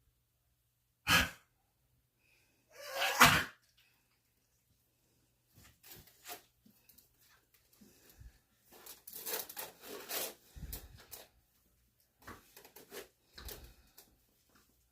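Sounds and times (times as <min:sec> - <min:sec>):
dog sneezing: 0:01.1 - 0:01.4, 0:02.8 - 0:03.6.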